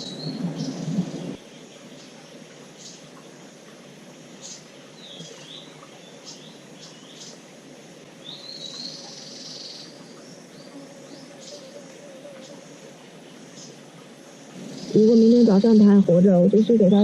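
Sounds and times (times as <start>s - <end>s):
birds chirping and whistling: 0.0s - 1.4s, 14.6s - 17.0s.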